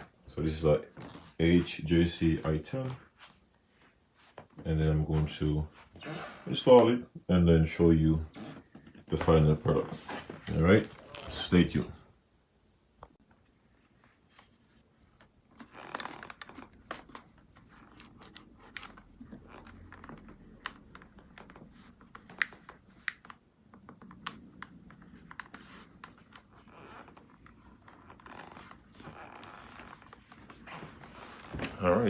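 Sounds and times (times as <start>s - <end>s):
scratching and rubbing: 13.3s - 32.0s.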